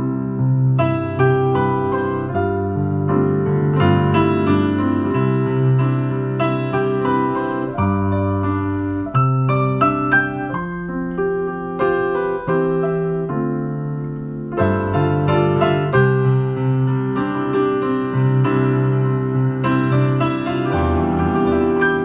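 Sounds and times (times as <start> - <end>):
slow solo piano piece: 0.0 - 22.0.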